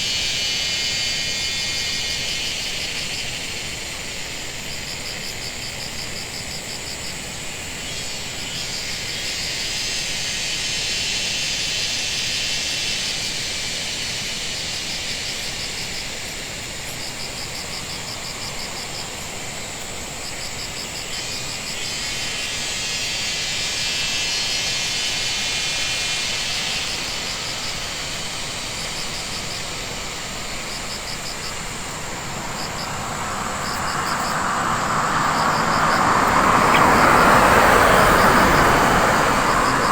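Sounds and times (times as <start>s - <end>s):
insect buzzing chorus: 0.0s - 39.9s
insects chirping: 0.0s - 39.9s
rushing noise: 21.4s - 39.9s.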